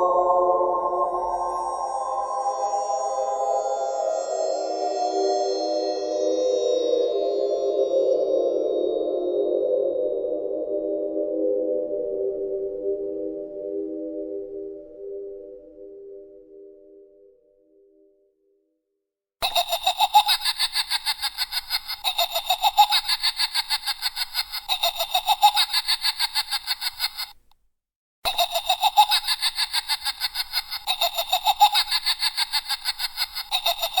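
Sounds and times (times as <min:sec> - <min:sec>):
rapid pulsing spooky laughter: 0:19.4 - 0:27.4, 0:28.2 - 0:34.0.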